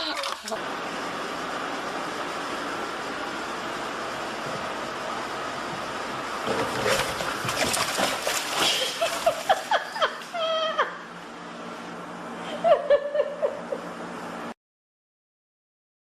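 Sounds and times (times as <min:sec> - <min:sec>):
water splashing: 0:00.0 - 0:00.6, 0:06.5 - 0:09.6
person laughing: 0:08.6 - 0:11.1, 0:12.4 - 0:14.0.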